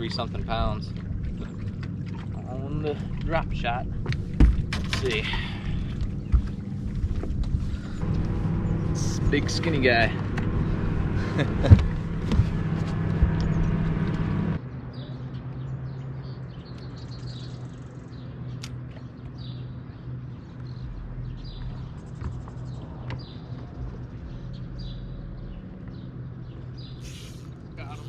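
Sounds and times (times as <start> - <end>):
low hum: 0.0 - 28.0
small birds chirping: 15.0 - 28.0.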